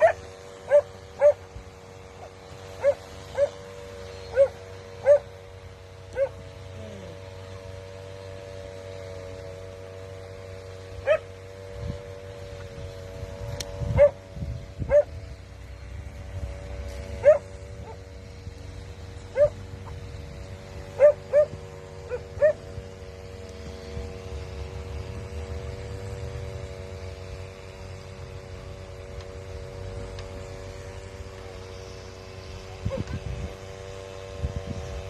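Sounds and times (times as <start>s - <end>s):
dog barking in sharp yips: 0.0s - 1.4s
steady droning hum: 0.0s - 35.0s.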